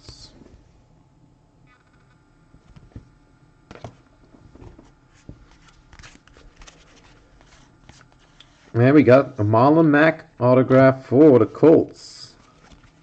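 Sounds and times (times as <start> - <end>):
trading cards clicking and rustling: 4.8 - 8.6.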